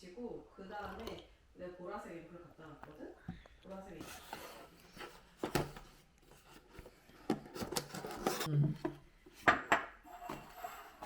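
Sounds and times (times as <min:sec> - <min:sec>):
rustling and rubbing: 0:03.7 - 0:08.5.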